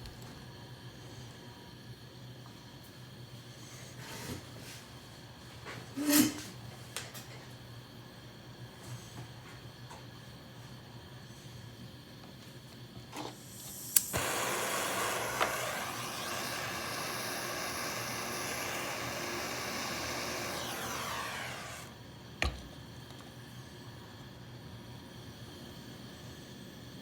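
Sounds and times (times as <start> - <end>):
gas flame hissing: 7.8 - 27.0.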